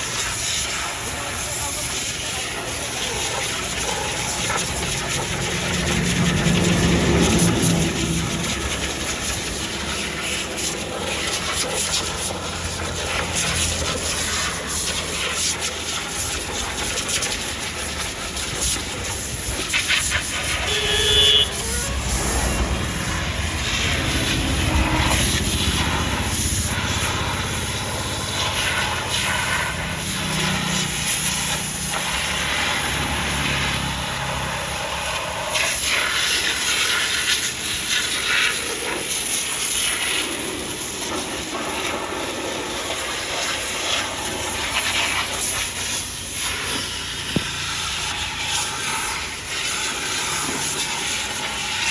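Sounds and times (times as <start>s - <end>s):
engine running steadily: 0.0s - 51.9s
hiss of spraying water: 0.0s - 51.9s
short beep: 20.7s - 21.9s.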